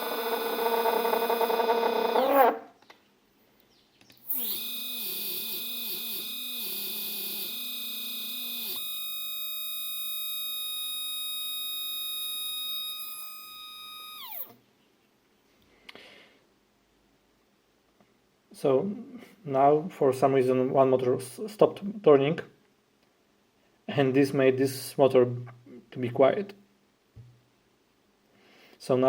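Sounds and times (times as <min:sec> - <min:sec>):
stepper motors electrical whine: 0:00.0 - 0:02.6, 0:04.2 - 0:14.6.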